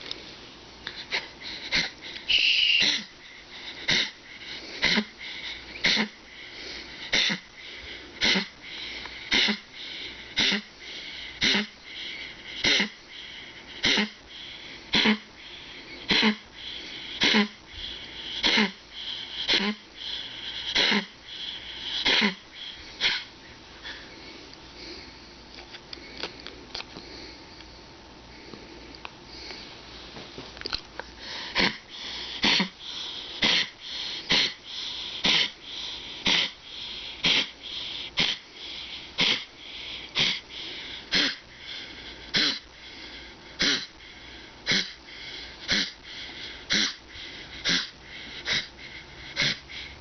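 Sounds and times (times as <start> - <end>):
dog wheezing and coughing: 0.9 - 24.1, 31.2 - 50.0
dog sniffing: 31.2 - 49.9.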